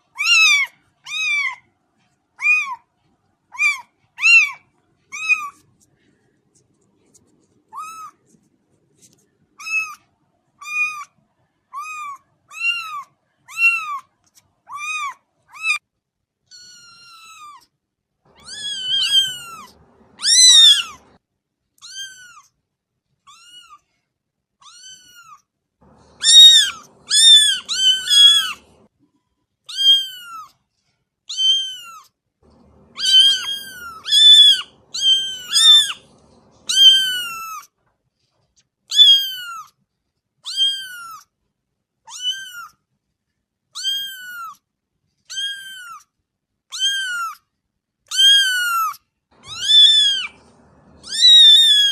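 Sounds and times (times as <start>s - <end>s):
kittens mewing: 0.1s - 1.7s, 3.5s - 5.6s, 11.8s - 14.1s, 18.3s - 21.2s, 24.6s - 28.9s, 31.3s - 37.7s, 43.8s - 44.6s, 46.7s - 47.4s, 48.1s - 51.9s.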